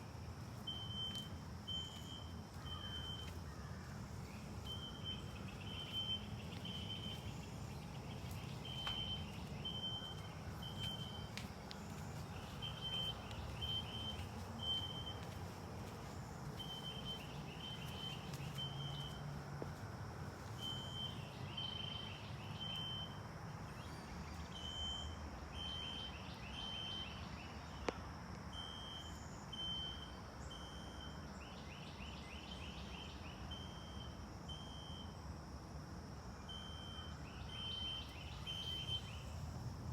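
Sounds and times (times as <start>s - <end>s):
fire alarm horn beeping: 0.7s - 3.4s, 8.6s - 11.4s, 12.4s - 15.4s, 20.6s - 22.0s, 28.6s - 31.3s, 36.5s - 39.3s.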